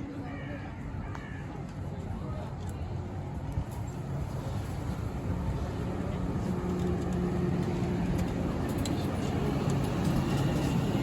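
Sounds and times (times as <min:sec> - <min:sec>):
vehicle engine low rumble: 0:03.2 - 0:11.0.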